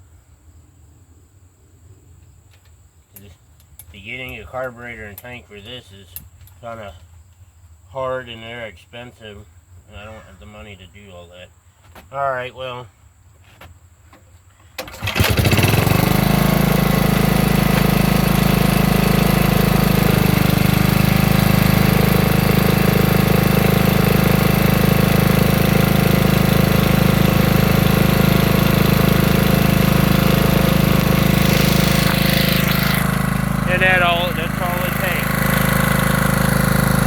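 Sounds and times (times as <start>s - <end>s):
generator engine starting and running: 14.8s - 37.0s.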